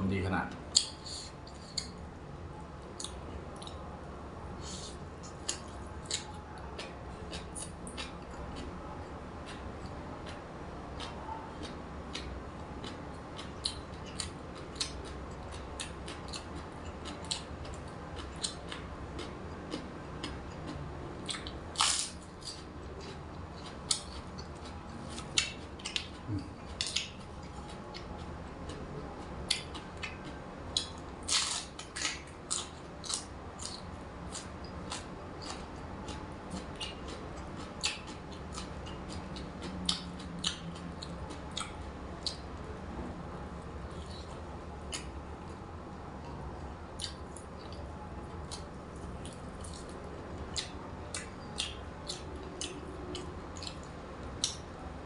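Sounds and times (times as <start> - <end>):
person chewing crunchy food: 9.4 - 28.8, 29.4 - 42.4, 47.0 - 54.6.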